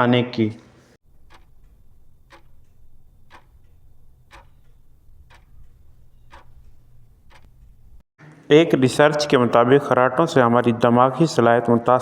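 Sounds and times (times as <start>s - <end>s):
clock ticking: 1.1s - 8.0s.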